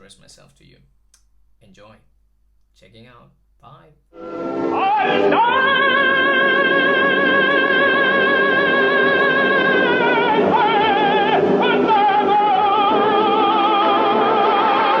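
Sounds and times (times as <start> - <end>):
operatic singing with vibrato: 4.2 - 15.0.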